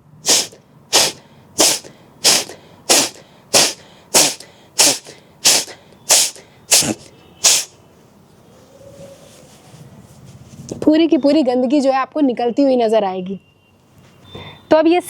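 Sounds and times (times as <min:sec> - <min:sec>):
woman blowing out through nose: 0:00.2 - 0:07.7.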